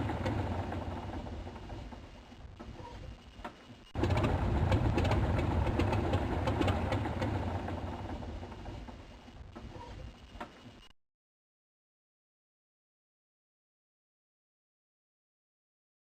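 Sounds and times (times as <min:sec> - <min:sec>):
helicopter rotor blades chopping: 0:00.0 - 0:03.2, 0:04.0 - 0:10.4.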